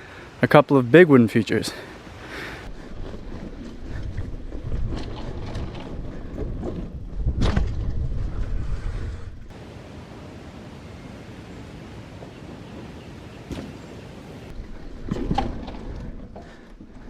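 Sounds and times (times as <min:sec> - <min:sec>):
bike rattling and knocking: 0:02.7 - 0:08.5, 0:14.5 - 0:17.0
wind buffeting microphone: 0:02.7 - 0:17.0.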